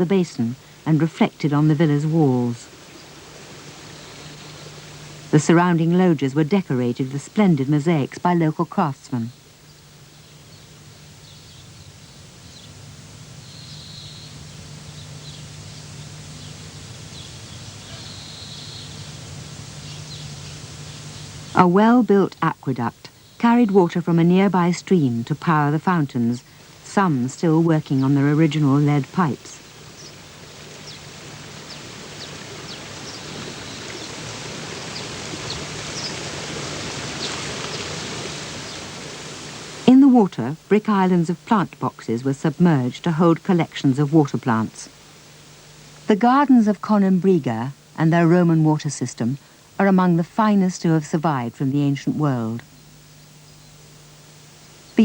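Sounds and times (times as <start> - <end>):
birds chirping: 0.0 - 55.0
low steady hum: 0.0 - 55.0
steady hiss: 0.0 - 55.0.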